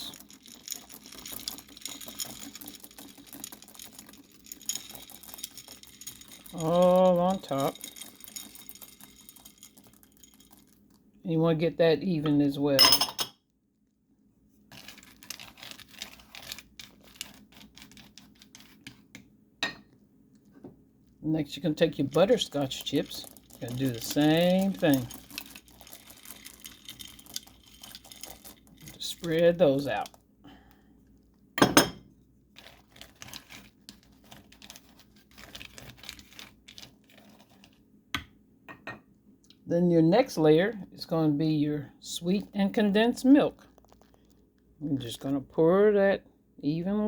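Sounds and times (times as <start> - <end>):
chips scattered across baking pan: 21.6 - 30.2.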